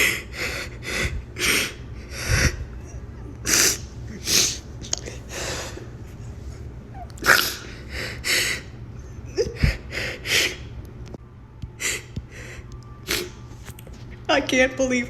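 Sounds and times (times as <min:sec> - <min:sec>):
person sniffing and gasping: 0:03.4 - 0:05.9, 0:11.8 - 0:13.4.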